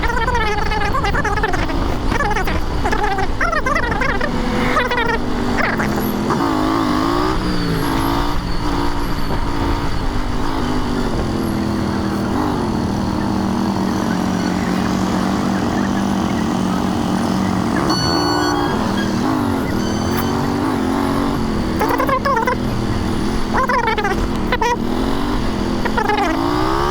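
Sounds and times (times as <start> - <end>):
motorcycle engine revving: 0.0 - 26.9
short high beep: 17.7 - 22.3.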